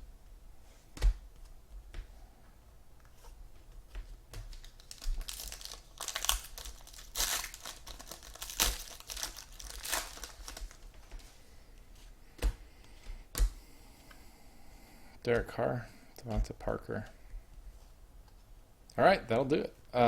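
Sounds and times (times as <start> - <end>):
wrapper tearing and crumpling: 4.6 - 10.9.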